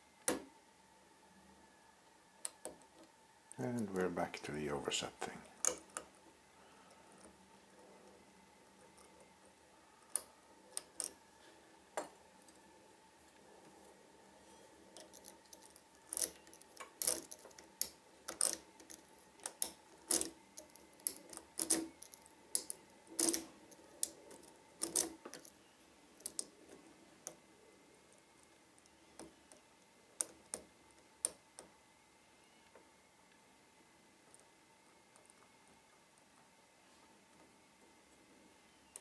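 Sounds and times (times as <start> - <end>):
light scraping of lock pick: 14.6 - 25.5
metallic lock pick clicks: 15.0 - 23.4.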